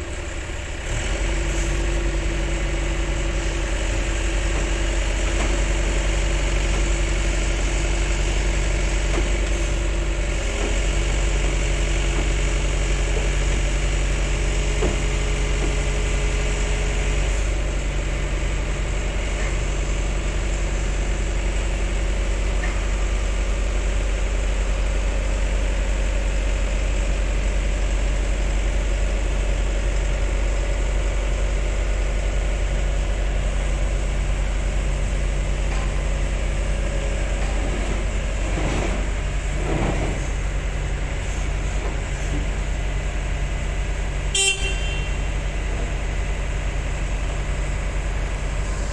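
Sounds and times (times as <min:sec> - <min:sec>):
heavy diesel engine idling: 0:00.0 - 0:48.9.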